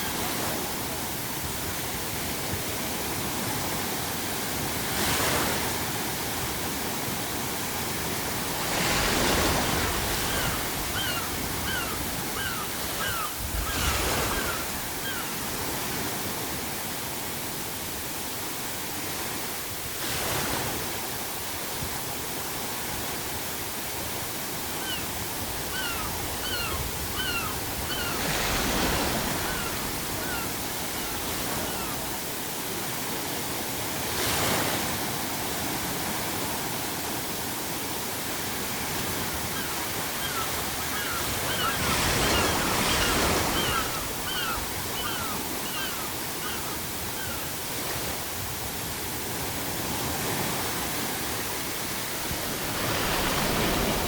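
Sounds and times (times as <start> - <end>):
sea waves breaking on shore: 0.0 - 54.0
seagulls calling: 8.8 - 15.6, 24.7 - 32.2, 38.9 - 47.9.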